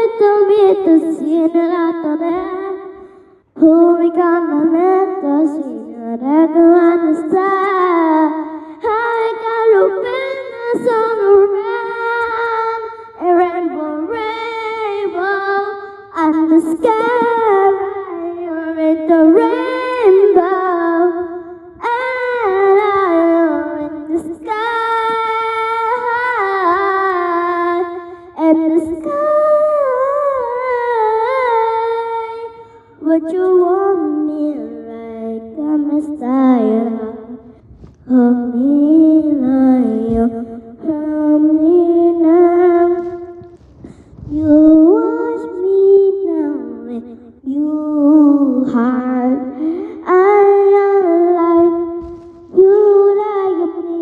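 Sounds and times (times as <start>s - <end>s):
woman singing unaccompanied: 44.2s - 54.0s.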